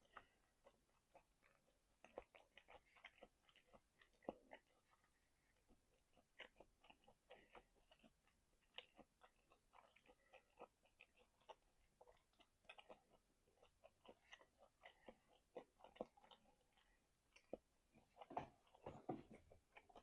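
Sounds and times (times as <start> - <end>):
person chewing with lip smacks: 0.0 - 20.0.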